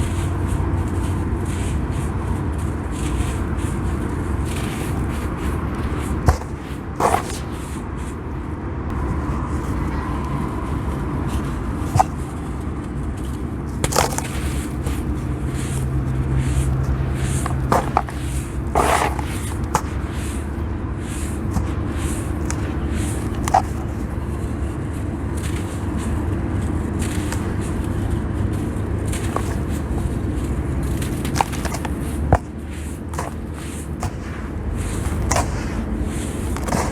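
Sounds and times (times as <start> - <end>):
damp sand crunching by hand: 0.0 - 10.0, 10.6 - 36.9
steady low hum: 0.0 - 36.9.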